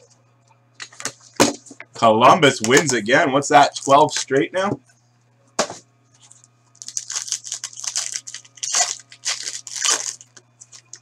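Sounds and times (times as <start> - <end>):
packaging tearing and crinkling: 6.8 - 11.0.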